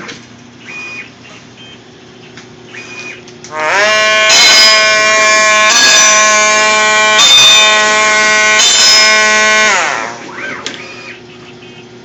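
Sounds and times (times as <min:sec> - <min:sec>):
plasma cutter high-pitched whine: 0:03.0 - 0:11.2.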